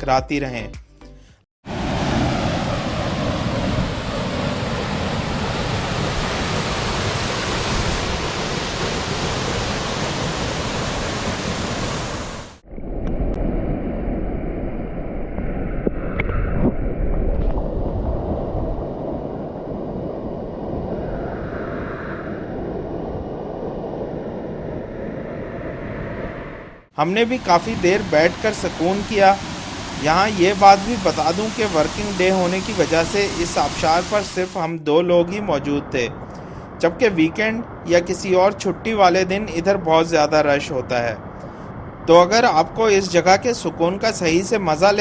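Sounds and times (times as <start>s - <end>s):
waterfall rushing: 1.7s - 12.6s, 27.0s - 34.6s.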